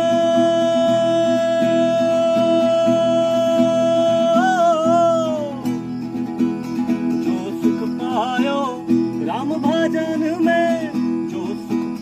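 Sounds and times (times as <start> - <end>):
man singing: 0.0 - 5.9, 7.2 - 12.0
strummed acoustic guitar: 0.0 - 12.0.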